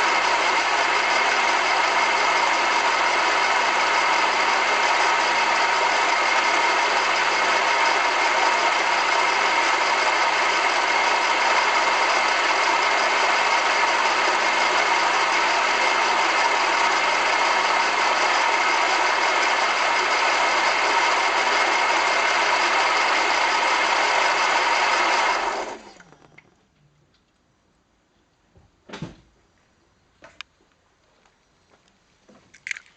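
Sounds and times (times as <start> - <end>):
car engine idling: 0.0 - 26.0
steady whining tone: 0.0 - 26.3.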